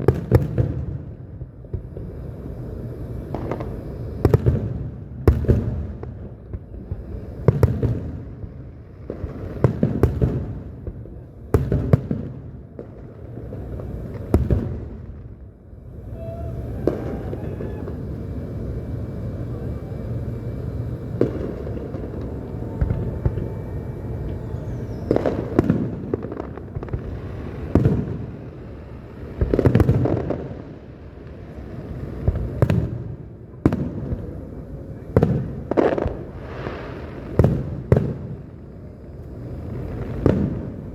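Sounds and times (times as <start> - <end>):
fireworks bursting with bangs: 0.0 - 40.9
steady low rumble: 12.7 - 40.9.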